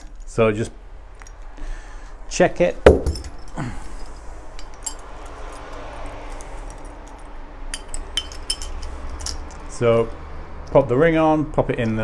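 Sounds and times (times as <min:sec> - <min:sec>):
small latch parts clinking: 0:01.1 - 0:01.6, 0:02.8 - 0:11.0.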